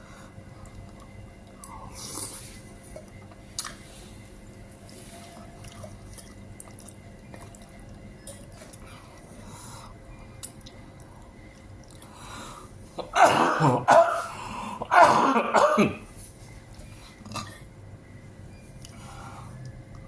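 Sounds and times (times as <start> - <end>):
man coughing: 13.0 - 16.1.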